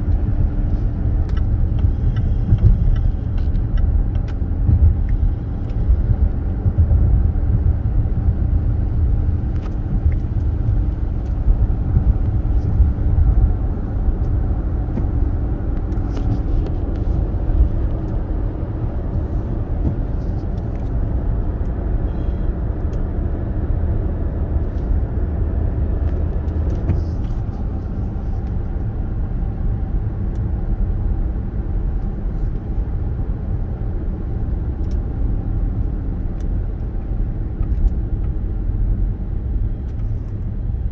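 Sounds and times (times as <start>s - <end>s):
road and engine rumble: 0.0s - 40.9s.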